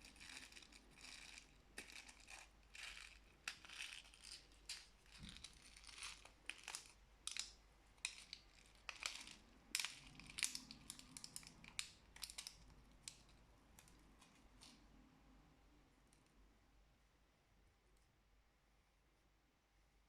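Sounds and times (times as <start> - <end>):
handling crackles and clicks: 0.0 - 14.8.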